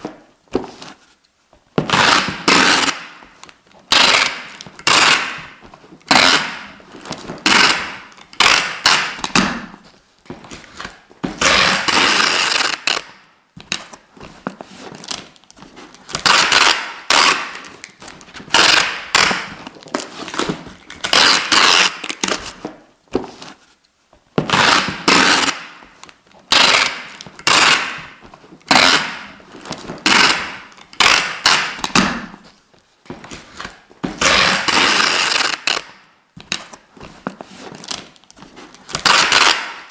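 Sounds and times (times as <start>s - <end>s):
adhesive tape ripping off roll: 1.9s - 3.2s, 3.9s - 6.8s, 7.4s - 9.8s, 10.9s - 14.0s, 16.1s - 22.6s, 24.5s - 25.8s, 26.5s - 29.4s, 30.0s - 32.4s, 34.2s - 36.7s, 38.8s - 39.9s.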